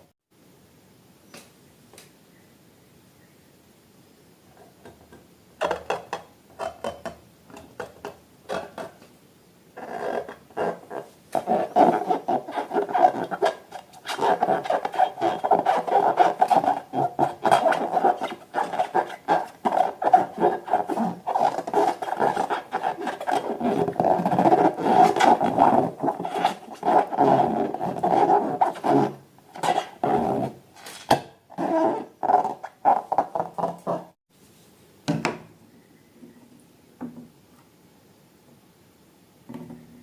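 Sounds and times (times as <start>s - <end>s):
rubber balloons squeaking: 9.8s - 30.6s, 31.5s - 34.2s.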